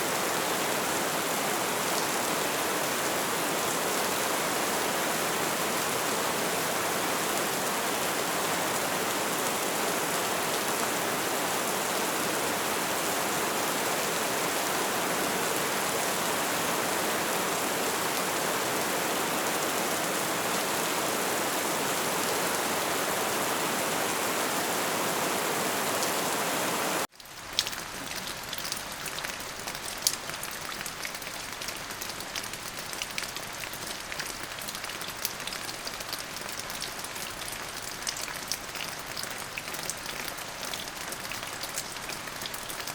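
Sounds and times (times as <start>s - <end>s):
dense rain hiss: 0.0s - 30.4s
raindrops ticking on surface: 27.0s - 42.9s.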